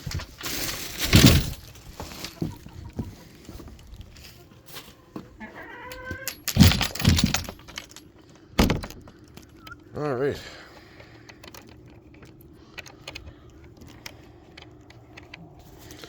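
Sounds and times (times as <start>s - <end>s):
animal crying: 5.3s - 6.5s
heavy thumps: 6.3s - 8.0s, 8.6s - 9.4s.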